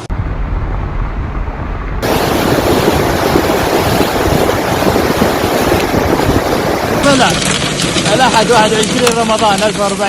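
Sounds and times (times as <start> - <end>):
low rumble: 0.0 - 8.1
hail clattering: 2.0 - 10.0.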